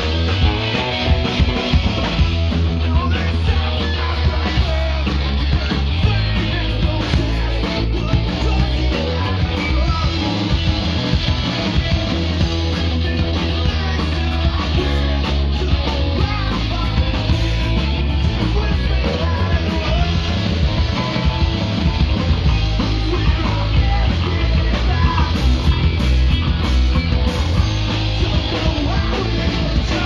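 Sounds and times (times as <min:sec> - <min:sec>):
punk rock band playing: 0:00.0 - 0:30.0.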